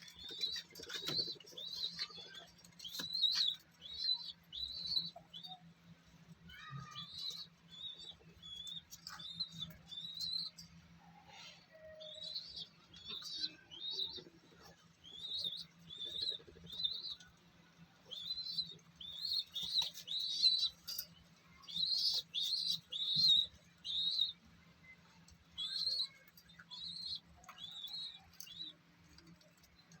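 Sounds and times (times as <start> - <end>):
bird chirping: 18.1 - 25.0.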